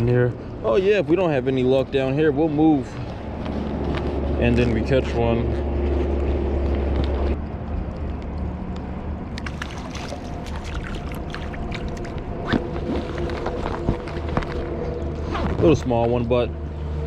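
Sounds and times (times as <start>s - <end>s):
small splashes: 9.4s - 13.7s
stream water rushing: 9.4s - 13.7s.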